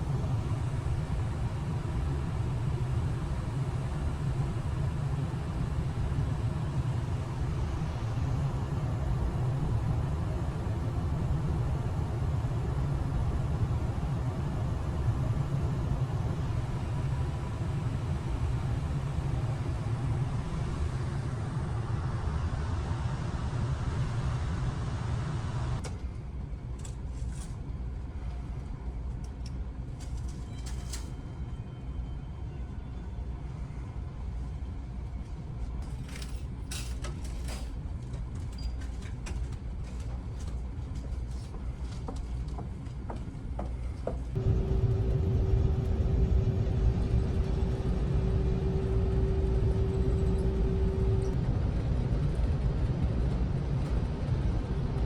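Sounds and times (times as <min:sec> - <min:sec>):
steady hum: 0:00.0 - 0:25.8, 0:43.8 - 0:55.0
ferry engines rumbling: 0:42.7 - 0:55.0.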